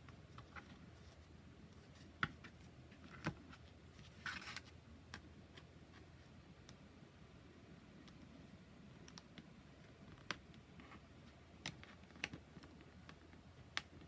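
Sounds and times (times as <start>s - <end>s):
light clicks and taps of cards: 9.0s - 14.0s.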